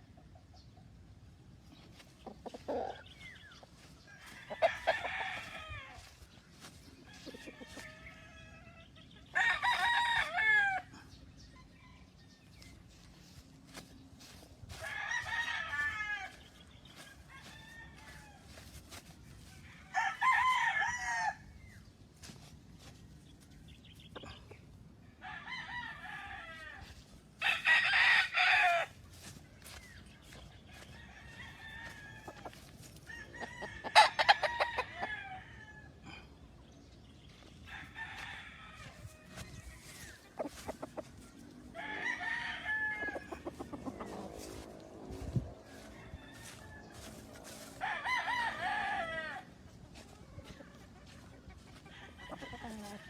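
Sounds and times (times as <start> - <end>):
chicken clucking: 1.7 - 5.9, 43.0 - 45.5, 49.9 - 53.0
roosters crowing: 2.5 - 12.4, 13.0 - 23.4, 24.2 - 36.4, 37.5 - 53.0.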